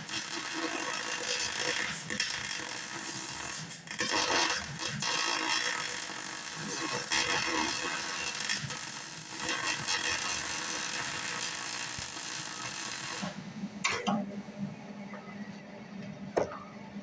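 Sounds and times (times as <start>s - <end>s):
welding arc hiss: 0.0s - 13.4s.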